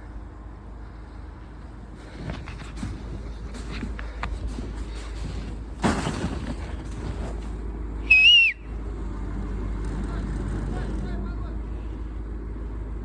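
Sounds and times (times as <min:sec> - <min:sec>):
excavator engine humming: 0:01.6 - 0:12.2
small knocks: 0:01.7 - 0:07.8
heavy crash of falling material: 0:01.8 - 0:08.6
short high whistle: 0:08.1 - 0:08.7.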